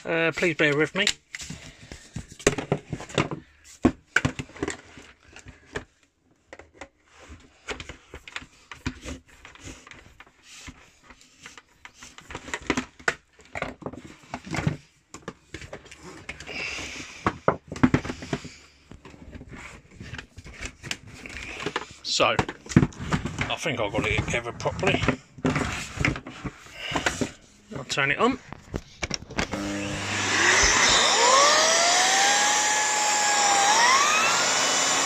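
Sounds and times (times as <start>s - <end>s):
plastic clicks and knocks: 28.4s - 29.5s.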